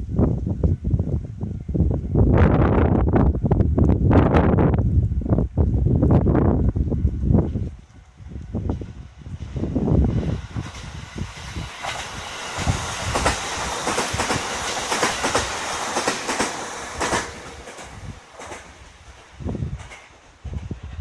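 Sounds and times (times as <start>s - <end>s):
train wheels clattering over rails: 8.6s - 21.0s.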